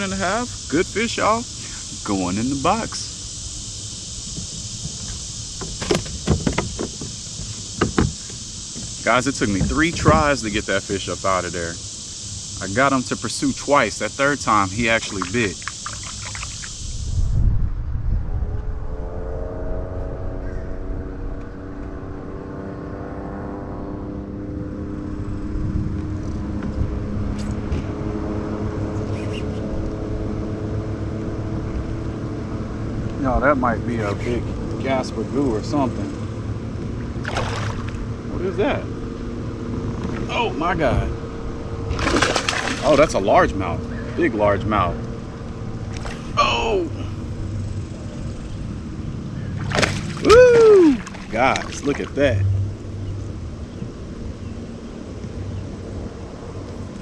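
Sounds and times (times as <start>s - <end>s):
insects hissing: 0.0s - 18.0s, 32.8s - 56.0s
motorboat engine droning: 0.0s - 57.0s
wind and water rumble: 0.0s - 57.0s
knocks and clunks on a kayak: 4.3s - 10.4s.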